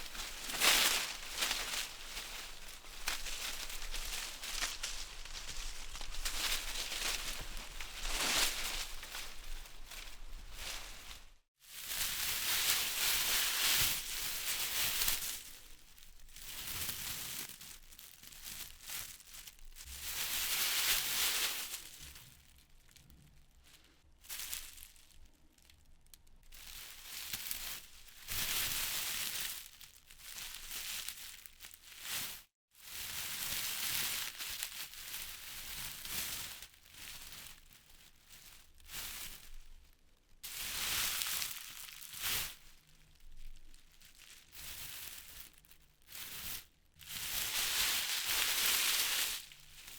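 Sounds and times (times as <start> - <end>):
wind rustling leaves: 0.0 - 15.4, 47.2 - 49.9.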